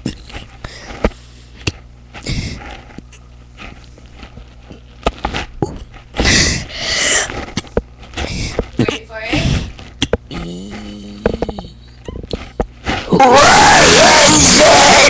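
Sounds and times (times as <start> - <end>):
sniffing and breathing: 2.2 - 3.0, 6.1 - 12.0.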